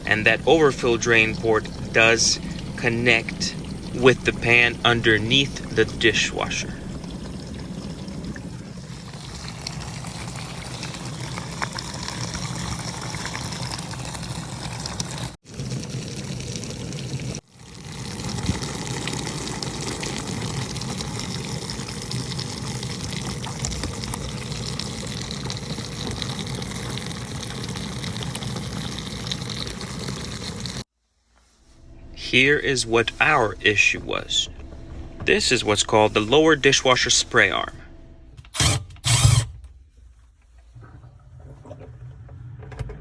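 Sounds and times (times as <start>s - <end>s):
dishwasher water spraying: 0.0s - 13.2s, 31.6s - 39.4s
pump humming: 0.0s - 30.8s, 31.6s - 39.5s.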